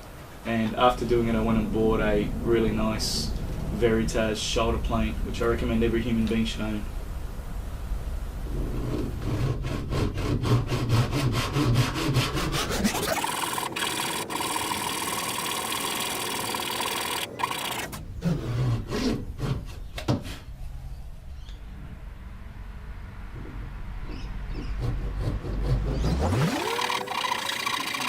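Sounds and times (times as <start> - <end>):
hand saw cutting wood: 8.9 - 19.9, 24.8 - 28.0
steady machine whine: 12.8 - 18.2, 26.2 - 28.0.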